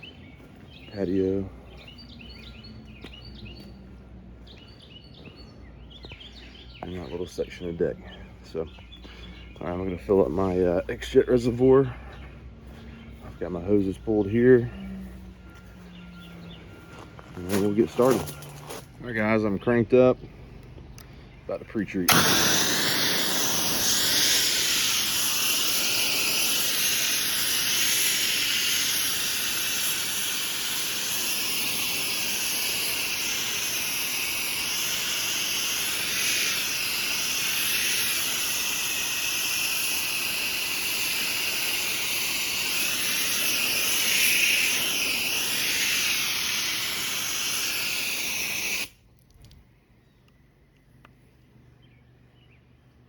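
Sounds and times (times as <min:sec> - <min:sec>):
pressure washer spraying: 0:22.1 - 0:49.0.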